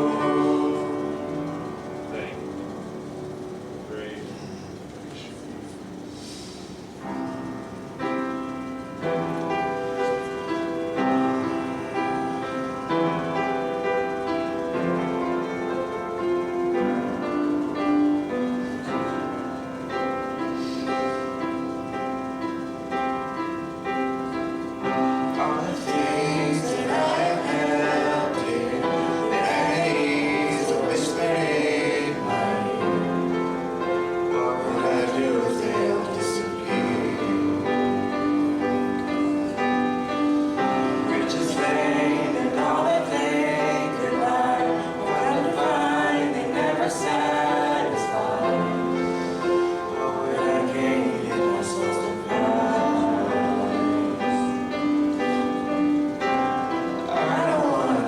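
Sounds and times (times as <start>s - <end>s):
group singing a hymn: 0.0s - 2.4s, 24.7s - 58.0s
piano playing: 0.0s - 58.0s.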